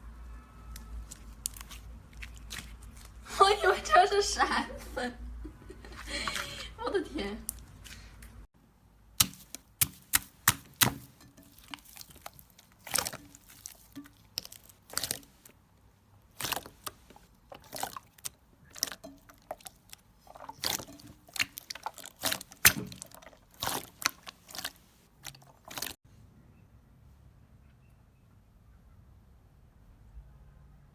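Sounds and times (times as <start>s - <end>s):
slime wet pops and crackles: 0.8s - 3.2s, 9.2s - 15.5s, 16.3s - 26.0s.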